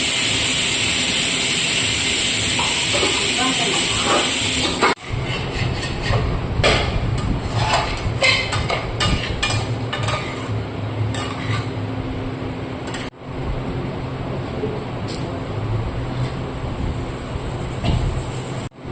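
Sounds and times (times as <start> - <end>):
spoon scraping cooking pan: 7.4 - 10.5, 11.1 - 11.7.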